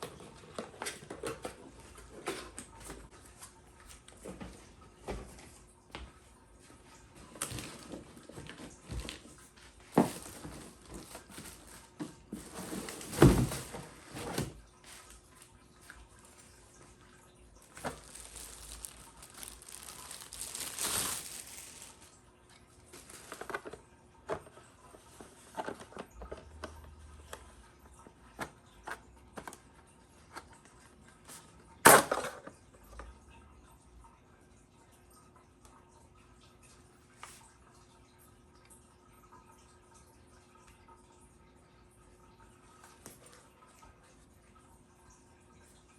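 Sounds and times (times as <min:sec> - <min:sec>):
packaging rustling: 0:10.0 - 0:14.5, 0:17.6 - 0:22.2, 0:22.9 - 0:23.8.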